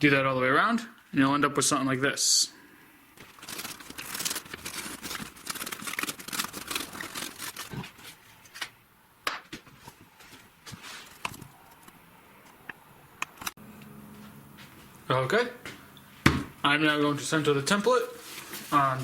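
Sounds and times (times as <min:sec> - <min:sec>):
paper crinkling and tearing: 0:03.2 - 0:08.7.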